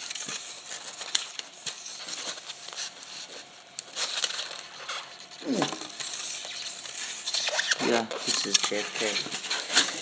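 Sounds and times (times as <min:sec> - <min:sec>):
plastic and cardboard crinkling: 0:00.0 - 0:10.0.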